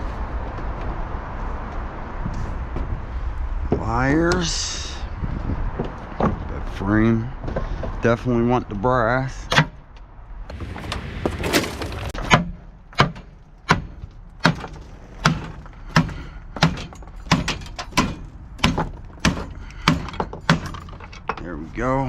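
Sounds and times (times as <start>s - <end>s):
sharp knocks with dull thuds: 10.5s - 21.0s.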